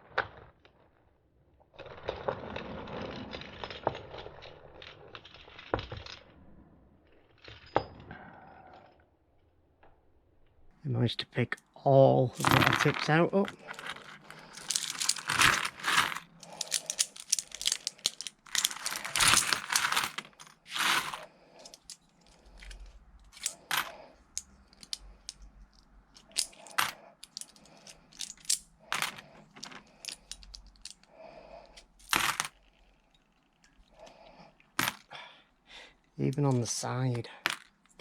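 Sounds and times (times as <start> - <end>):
coins clinking on a magnet: 12.4 - 25.5, 26.1 - 33.0, 34.8 - 35.1.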